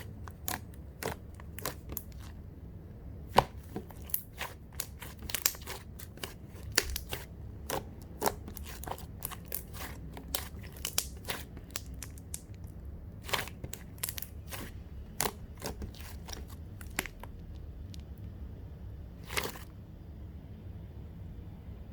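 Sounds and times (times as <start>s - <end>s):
knife cutting apple on board: 3.3s - 11.2s.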